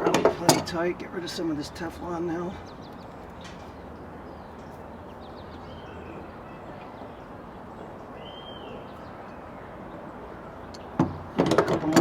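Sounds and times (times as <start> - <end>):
steady low outdoor noise: 0.0 - 12.0
faint bird chirps: 8.1 - 10.9.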